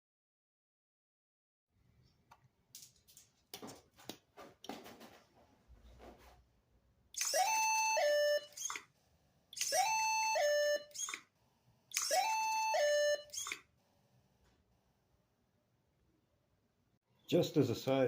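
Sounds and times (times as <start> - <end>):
electronic cuckoo call: 7.2 - 8.8, 9.6 - 11.3, 11.9 - 13.6.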